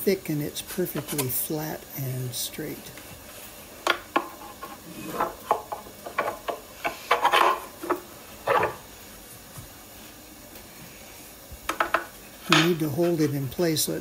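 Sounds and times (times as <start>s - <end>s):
wood scraping on wood: 3.9s - 8.8s.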